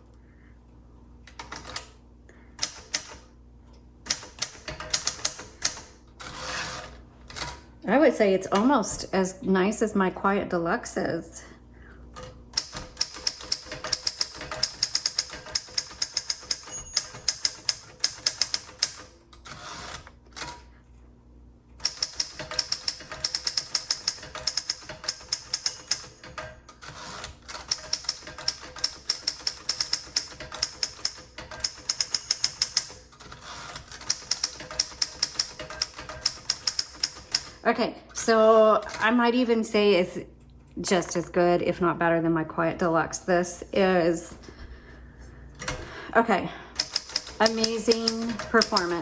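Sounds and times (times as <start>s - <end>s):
typewriter key strikes: 12.6s - 19.1s, 21.8s - 26.4s, 27.5s - 33.0s, 33.9s - 37.5s, 46.8s - 49.0s.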